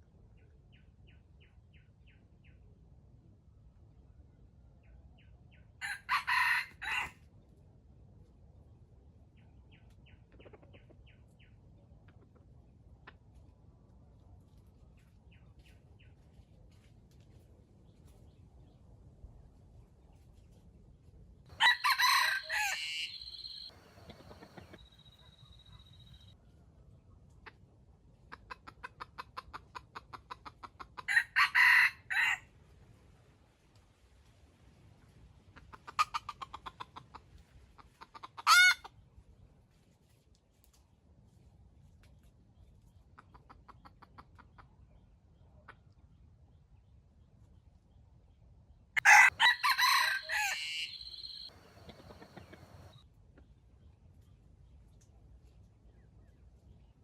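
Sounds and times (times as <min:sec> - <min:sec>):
rooster crowing: 0:05.8 - 0:07.1, 0:21.6 - 0:24.8, 0:31.1 - 0:32.4, 0:49.0 - 0:52.9
rooster clucking: 0:21.5 - 0:25.2, 0:35.6 - 0:37.2, 0:37.8 - 0:38.9, 0:49.0 - 0:53.0
small birds chirping: 0:21.6 - 0:26.4, 0:49.0 - 0:54.8.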